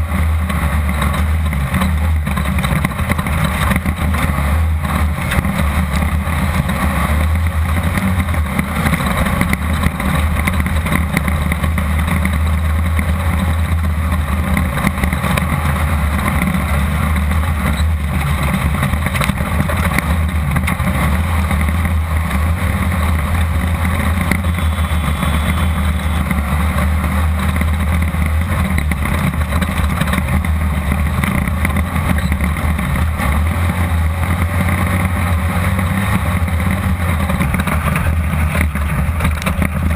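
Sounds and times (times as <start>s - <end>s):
buggy engine running: 0.0s - 39.9s
wind and road noise: 0.0s - 39.9s.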